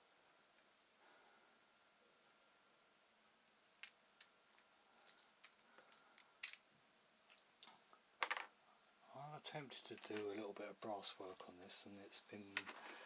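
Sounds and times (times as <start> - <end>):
small metal parts clinking: 3.6 - 6.7, 12.6 - 13.0.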